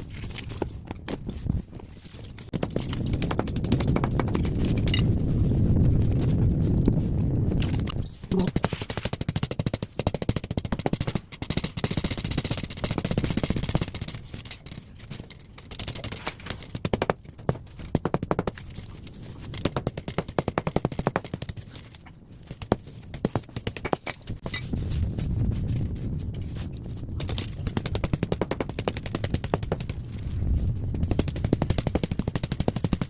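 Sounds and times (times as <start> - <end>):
metal fins clicking and crackling: 7.5 - 33.0.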